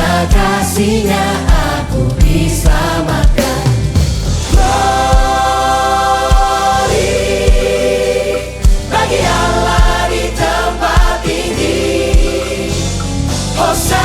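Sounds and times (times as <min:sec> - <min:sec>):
choir singing in harmony: 0:00.0 - 0:14.0
steady kick drum beat: 0:00.0 - 0:14.0
band playing: 0:03.3 - 0:07.8.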